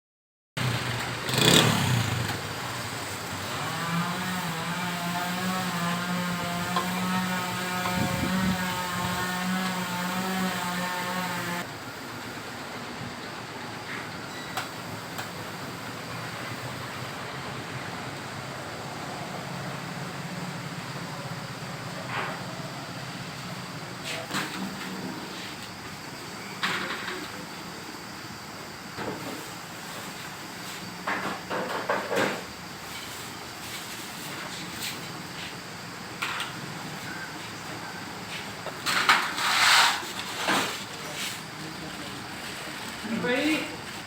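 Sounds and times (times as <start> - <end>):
motorcycle engine running: 0.6 - 3.8.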